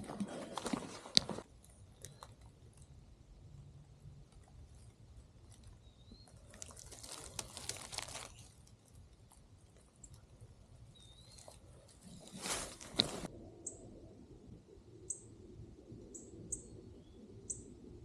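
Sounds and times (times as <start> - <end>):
footsteps crunching through leaves: 6.5 - 8.5, 12.0 - 13.3.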